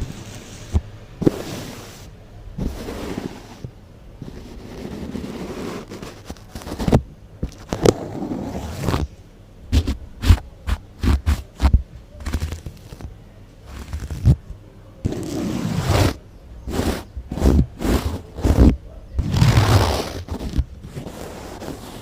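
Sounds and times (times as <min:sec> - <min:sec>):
brushing and scraping on microphone: 0:00.0 - 0:22.0
soft low thumps: 0:09.6 - 0:12.1.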